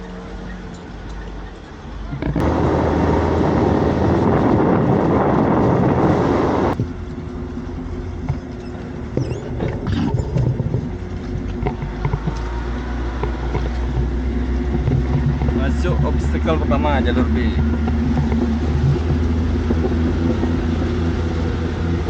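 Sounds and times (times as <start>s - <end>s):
vehicle engine running: 0.0s - 22.0s
knocks and rattles: 8.2s - 12.5s, 13.2s - 16.8s, 17.5s - 20.6s.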